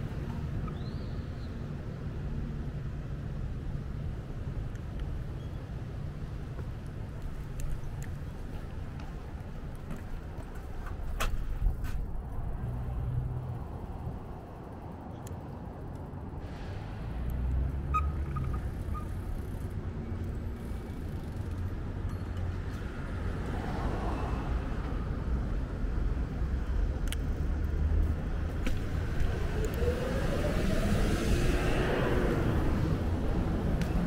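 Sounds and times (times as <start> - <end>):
street traffic rumble: 0.0 - 34.0
vehicle accelerating whine: 29.0 - 33.2.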